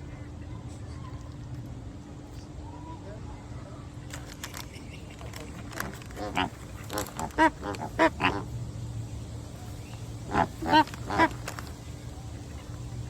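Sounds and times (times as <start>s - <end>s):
flamingos honking: 5.1s - 8.8s, 9.6s - 13.0s.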